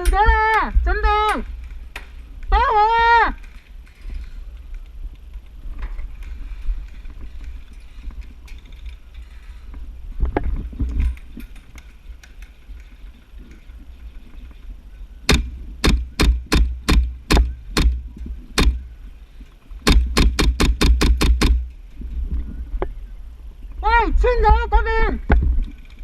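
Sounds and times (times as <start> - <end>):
airsoft gun shots: 15.3 - 18.0, 18.6 - 18.8, 19.9 - 21.7
dull low thumps: 15.3 - 19.0, 19.8 - 22.9.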